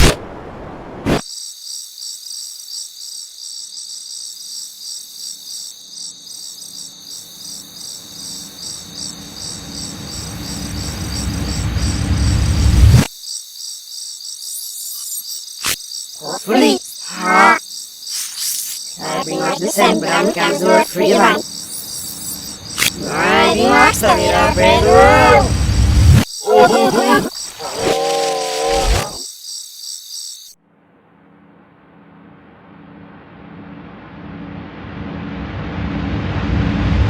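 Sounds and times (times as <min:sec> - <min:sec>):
crickets chirping: 0:01.2 - 0:30.6
low rumble: 0:32.1 - 0:37.0.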